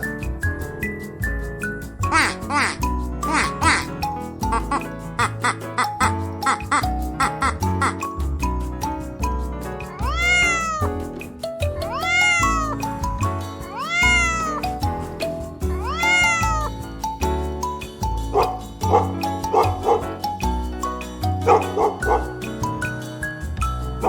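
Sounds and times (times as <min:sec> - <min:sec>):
light background music with beat: 0:00.0 - 0:24.0
cat meowing: 0:09.9 - 0:10.9, 0:11.9 - 0:12.9, 0:13.7 - 0:14.7, 0:15.7 - 0:16.7.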